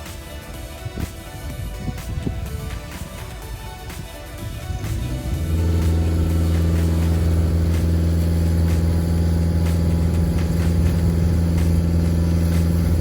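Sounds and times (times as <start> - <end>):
skid steer engine running: 4.4 - 13.0.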